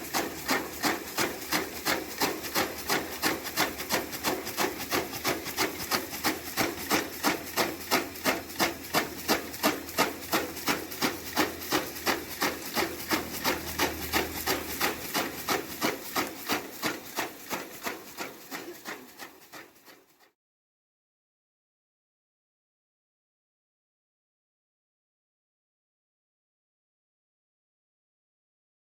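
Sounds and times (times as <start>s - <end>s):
chaff cutter blades chopping: 0.0s - 19.8s
low motor hum: 0.0s - 19.9s.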